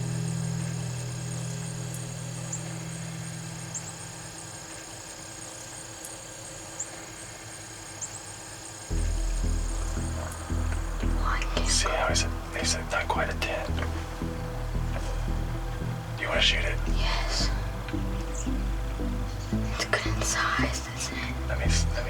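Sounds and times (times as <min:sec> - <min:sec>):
deep bass music: 0:00.0 - 0:04.2, 0:08.9 - 0:22.0
low background music: 0:00.0 - 0:07.1, 0:08.8 - 0:22.0
insect chirring: 0:00.0 - 0:22.0.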